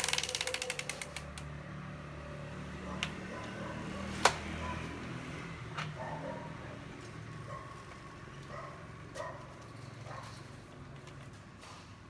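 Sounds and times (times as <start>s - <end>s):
sharp clicks of string trimmer: 0.0s - 1.5s.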